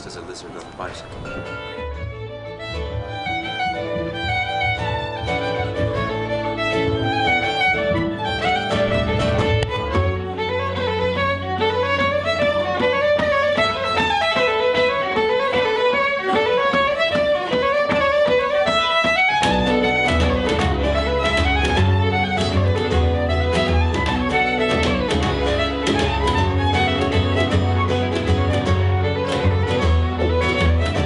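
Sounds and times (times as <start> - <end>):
fiddle playing quick melody: 0.0 - 31.0
strummed guitar: 0.0 - 31.0
bass line: 7.8 - 11.9.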